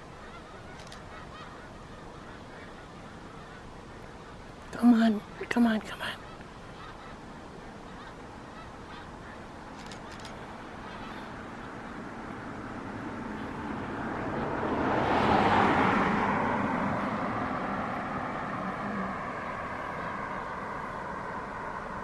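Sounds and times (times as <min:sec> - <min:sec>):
vehicle passing: 0:07.9 - 0:22.0.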